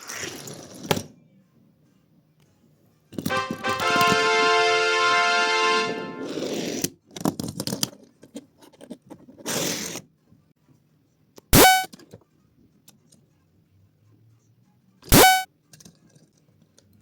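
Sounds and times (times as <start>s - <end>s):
toy cars clicking and scraping: 0.0s - 1.2s, 6.4s - 10.1s, 15.7s - 17.0s
loud horn honk: 3.3s - 6.4s, 11.6s - 11.9s, 15.1s - 15.5s.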